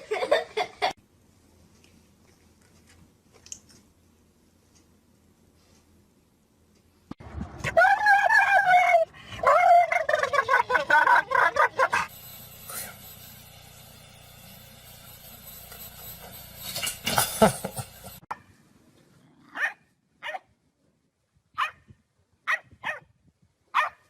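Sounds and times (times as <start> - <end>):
steady low hum: 9.1 - 18.3
dog barking: 19.5 - 20.5, 21.6 - 21.8, 22.5 - 23.1, 23.7 - 24.0.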